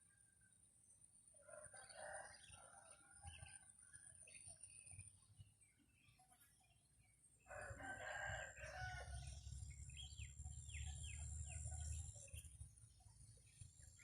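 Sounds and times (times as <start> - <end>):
small birds chirping: 1.7 - 14.0
rooster crowing: 7.5 - 9.4.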